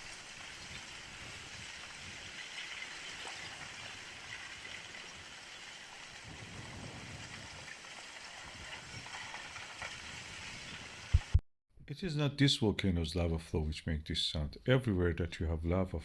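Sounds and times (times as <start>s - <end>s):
lava fragments crackling and tinkling: 0.0s - 11.2s.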